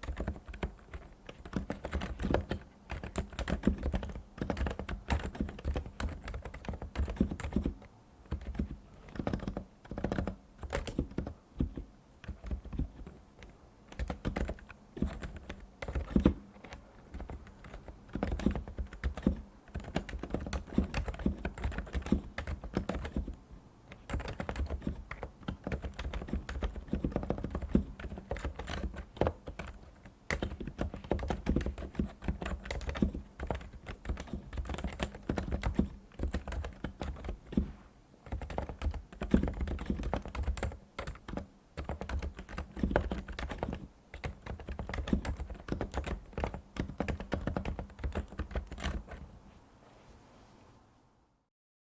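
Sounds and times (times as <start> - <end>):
keyboard typing: 0.0 - 49.3.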